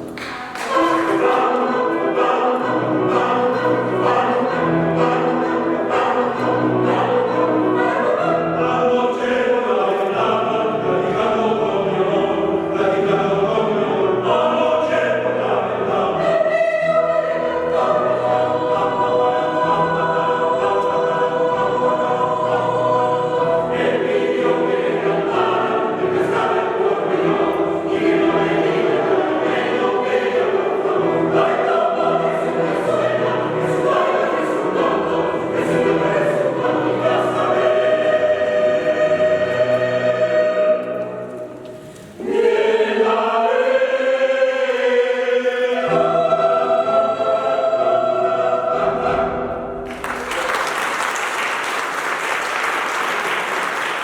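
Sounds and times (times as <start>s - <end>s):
choir singing: 0.0s - 54.0s.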